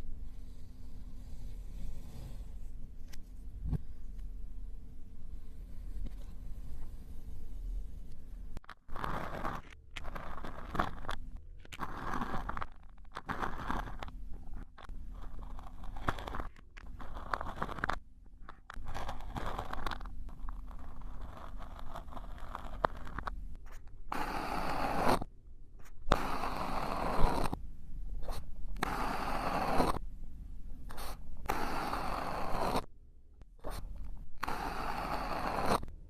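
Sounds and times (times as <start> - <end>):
scraping and crunching strokes: 8.6 - 27.6.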